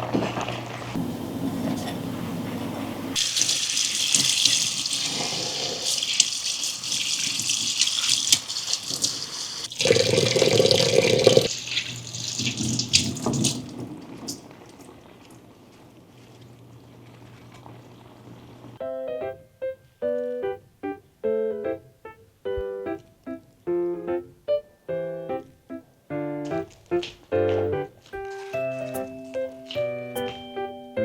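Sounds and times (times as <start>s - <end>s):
tap running into sink: 3.2s - 14.4s.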